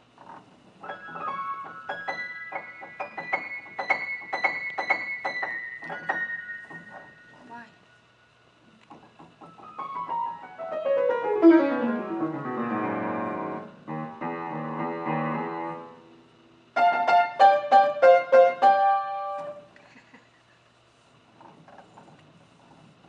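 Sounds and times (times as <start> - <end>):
piano keyboard playing: 0.8 - 7.7, 9.1 - 19.7.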